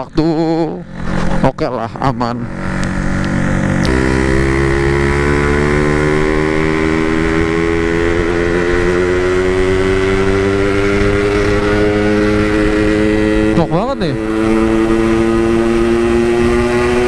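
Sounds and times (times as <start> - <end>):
motorcycle two-stroke engine accelerating: 0.0 - 17.0.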